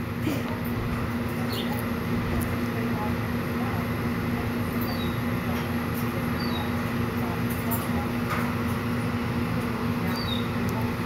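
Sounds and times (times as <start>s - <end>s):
steady low hum: 0.0s - 11.0s
bird chirps: 6.4s - 6.8s, 10.1s - 10.5s.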